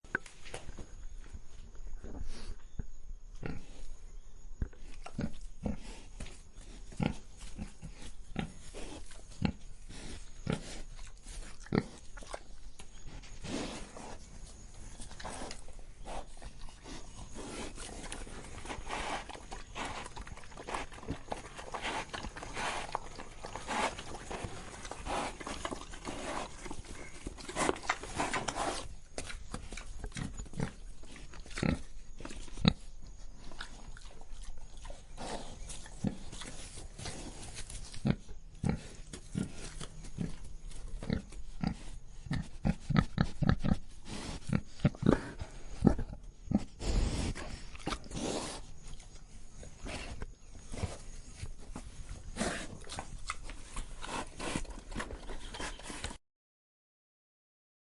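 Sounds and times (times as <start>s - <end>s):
pig breathing huffs: 7.8s - 11.6s, 13.2s - 14.4s, 15.2s - 29.9s, 41.6s - 48.9s, 49.7s - 56.2s.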